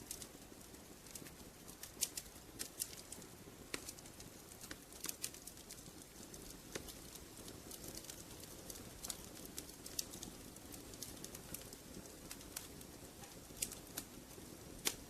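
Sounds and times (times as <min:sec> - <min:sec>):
fire hissing: 0:00.0 - 0:15.0
fire snapping and popping: 0:00.0 - 0:15.0.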